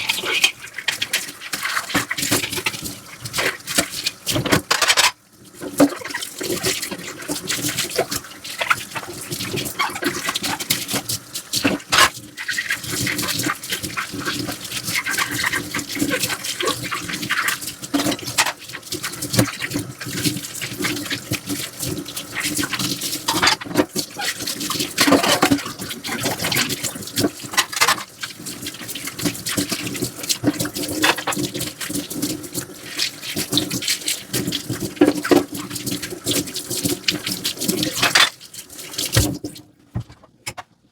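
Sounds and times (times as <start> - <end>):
dishes scrubbed by hand: 0.0 - 5.2, 5.8 - 21.2, 22.3 - 28.4, 35.0 - 39.3
water in sink: 0.0 - 40.8.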